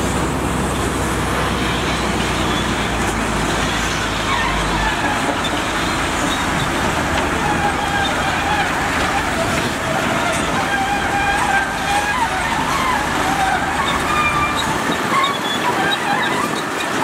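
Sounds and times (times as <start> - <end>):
diesel construction machinery rumble: 0.0 - 17.0
wavering engine whine: 0.0 - 17.0.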